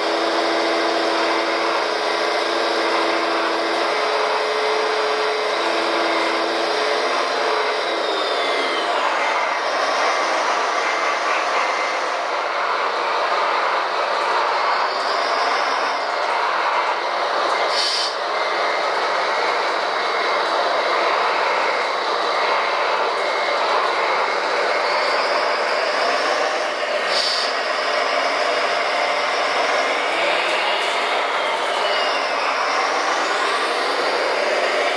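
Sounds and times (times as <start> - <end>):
small electric motors whirring: 0.0 - 12.6, 14.1 - 34.9
high motor whine: 0.0 - 34.9
short hisses: 17.7 - 18.2, 27.1 - 27.5.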